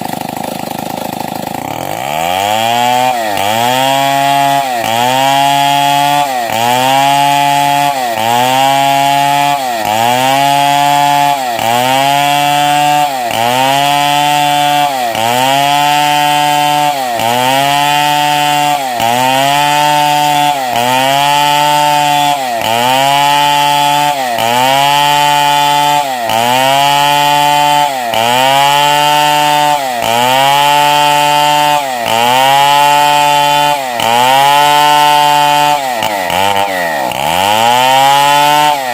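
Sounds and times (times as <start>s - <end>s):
chainsaw cutting through log: 0.0s - 38.9s.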